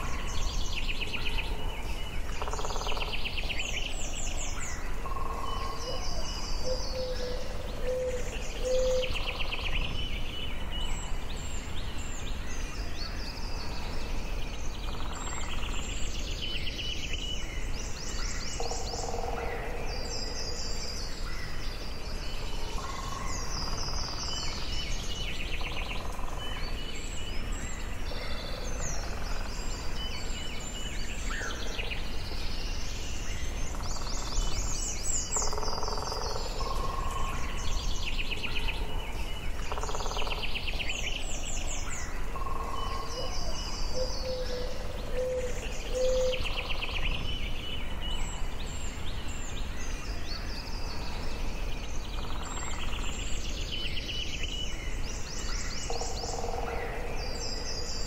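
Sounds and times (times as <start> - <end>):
songbirds chirping and trilling: 0.0 - 58.0.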